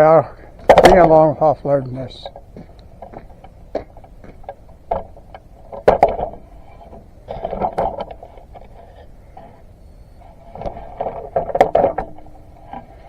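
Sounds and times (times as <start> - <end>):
logs knocking and thudding: 0.6 - 1.2, 2.3 - 8.7, 10.6 - 12.9.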